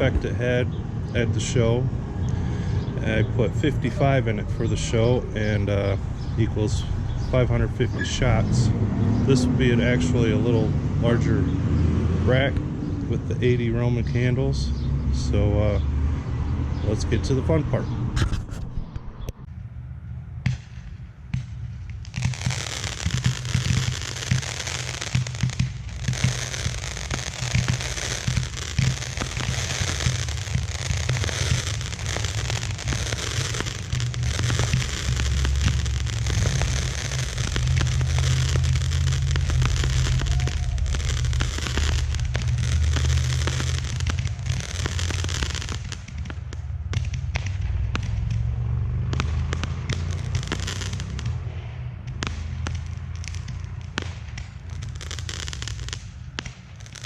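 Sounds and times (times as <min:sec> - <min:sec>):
roman candles popping and crackling: 0:00.0 - 0:00.4, 0:21.8 - 0:57.0
low rumble: 0:00.0 - 0:57.0.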